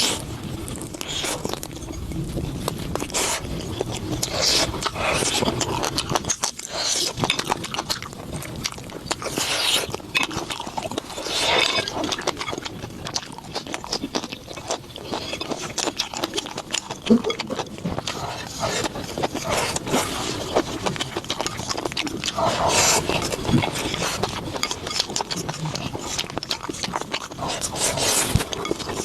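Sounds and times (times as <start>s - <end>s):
person chewing wetly: 0.0s - 29.0s.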